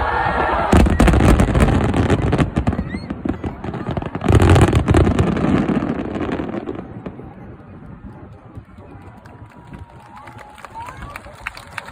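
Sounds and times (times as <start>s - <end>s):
loud firework bursts: 0.3s - 7.8s.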